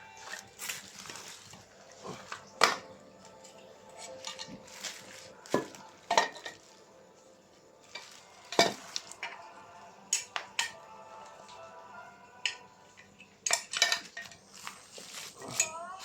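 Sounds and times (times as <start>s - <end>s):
metal scraping and handling: 0.3s - 6.8s
metal tools clinking: 2.2s - 6.8s, 13.4s - 15.8s.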